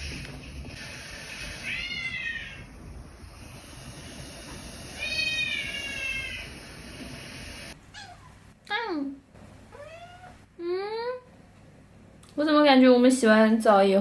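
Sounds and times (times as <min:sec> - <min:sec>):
cat meowing: 0:01.6 - 0:02.7, 0:05.0 - 0:06.5, 0:09.7 - 0:10.4.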